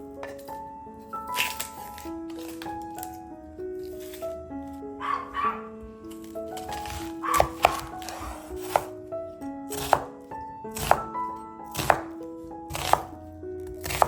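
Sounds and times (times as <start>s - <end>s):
knife chopping on cutting board: 1.4s - 2.6s, 6.6s - 8.9s, 9.7s - 11.1s, 11.7s - 14.0s.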